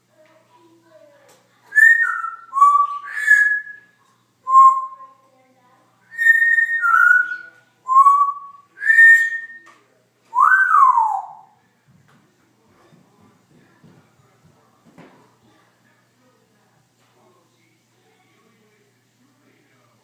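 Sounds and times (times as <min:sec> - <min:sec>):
parrot whistling: 0:01.7 - 0:05.1, 0:06.1 - 0:09.7, 0:10.3 - 0:11.6.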